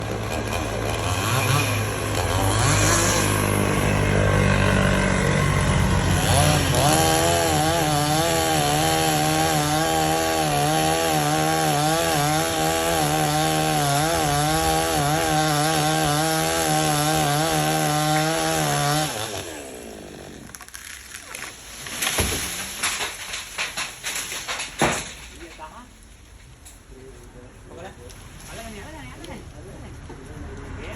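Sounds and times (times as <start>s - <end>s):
chainsaw cutting a tree: 0.0s - 21.3s.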